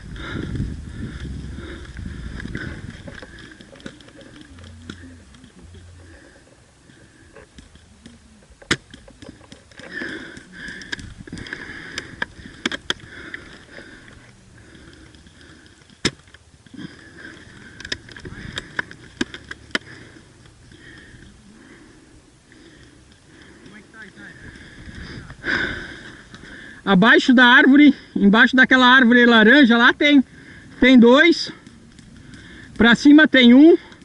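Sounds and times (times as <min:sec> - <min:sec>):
faint rustling: 0:00.0 - 0:27.0
distant voices: 0:00.0 - 0:34.0.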